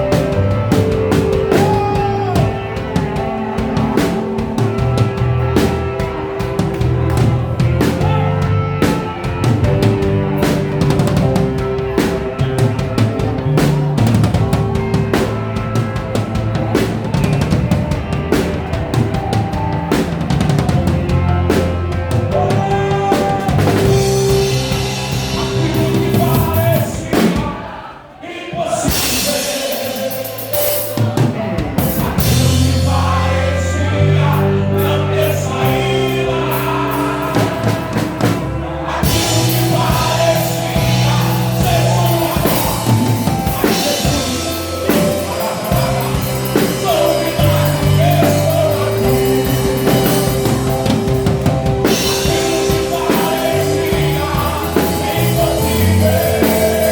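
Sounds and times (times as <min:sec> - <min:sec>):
bass guitar: 0:00.0 - 0:27.8, 0:28.8 - 0:56.9
drum kit: 0:00.0 - 0:56.9
live band playing worship music: 0:00.0 - 0:56.9.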